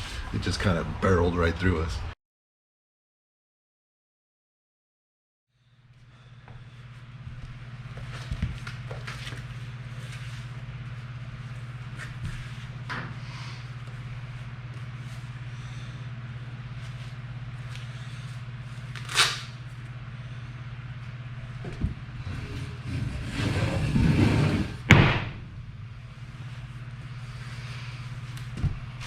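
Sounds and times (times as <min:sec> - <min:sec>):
steady low hum: 0:00.0 - 0:02.2, 0:05.6 - 0:29.0
rumbling and scuffling: 0:21.4 - 0:29.0
loud bang: 0:24.8 - 0:26.3
sharp knock: 0:24.9 - 0:25.4.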